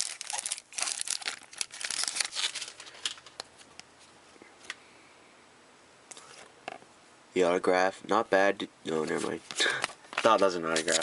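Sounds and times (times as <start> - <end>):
foil wrapper crinkling: 0.0 - 3.5
cards being flipped: 9.2 - 11.0.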